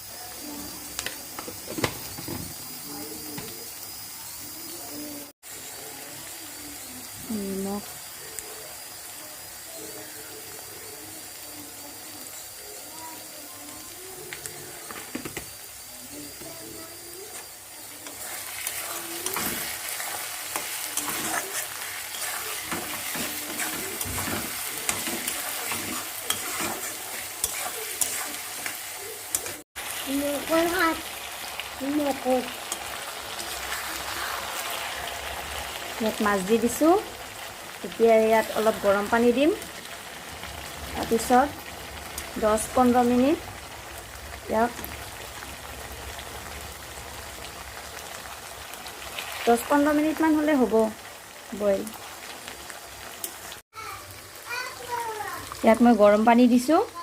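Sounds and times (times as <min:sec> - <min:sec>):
onion frying in hot oil: 0:00.0 - 0:57.0
spatula scraping a pan: 0:16.3 - 0:29.6.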